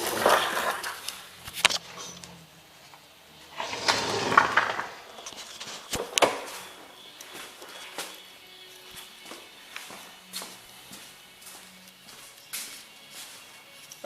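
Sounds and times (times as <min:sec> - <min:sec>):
scraping rustling handling noise: 0:03.5 - 0:09.2.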